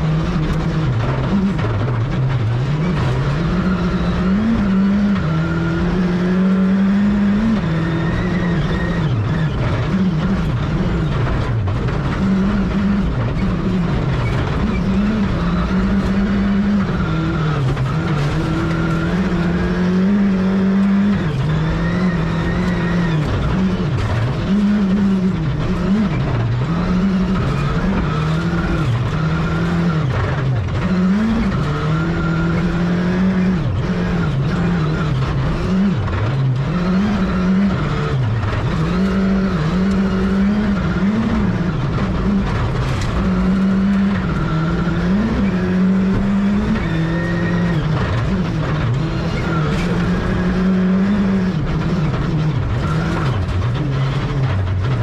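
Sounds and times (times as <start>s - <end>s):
rally car engine revving: 0.0s - 55.0s
tyre and road noise: 0.0s - 55.0s.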